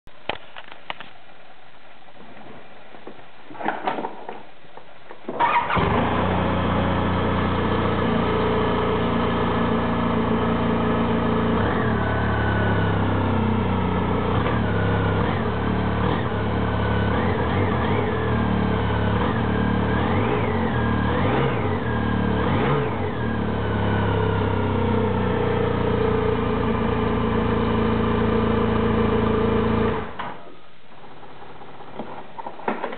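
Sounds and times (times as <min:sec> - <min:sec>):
engine throttle blips: 0:05.4 - 0:30.3.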